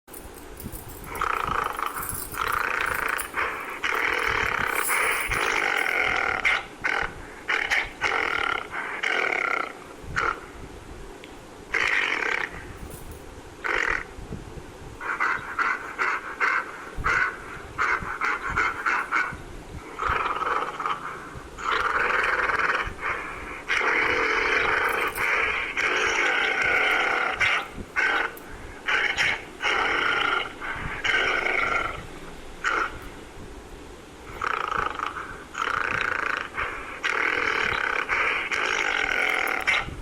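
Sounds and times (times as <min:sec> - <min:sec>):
gorilla roars: 0:05.4 - 0:10.4, 0:19.9 - 0:33.0, 0:34.3 - 0:39.9.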